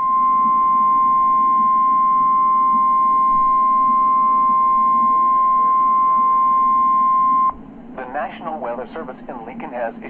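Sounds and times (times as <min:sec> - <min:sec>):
high-pitched alarm tone: 0:00.0 - 0:07.5.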